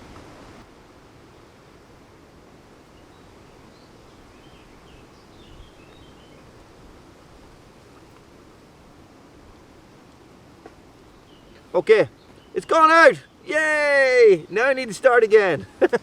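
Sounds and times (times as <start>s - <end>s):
wind rumbling on microphone: 0.0s - 11.5s
rain: 0.0s - 16.0s
faint bird chirps: 2.9s - 6.6s.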